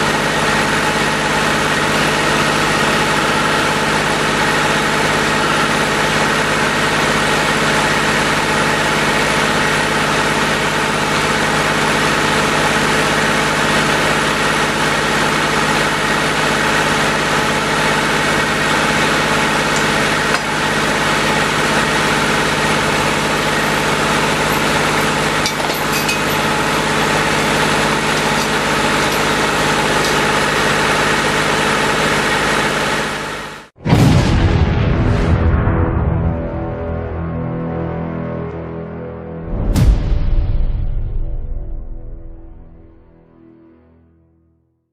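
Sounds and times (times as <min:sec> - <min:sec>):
tractor engine running: 0:00.0 - 0:33.8.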